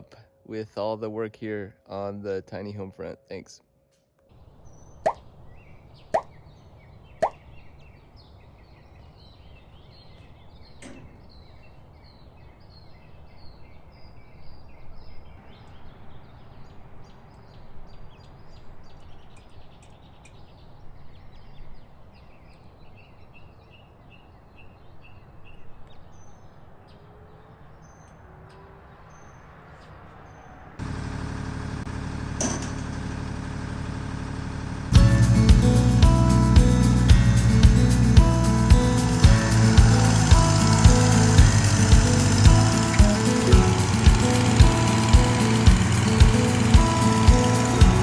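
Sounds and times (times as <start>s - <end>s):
small birds chirping: 4.4s - 30.6s, 34.9s - 48.0s
low steady rumble: 30.8s - 48.0s.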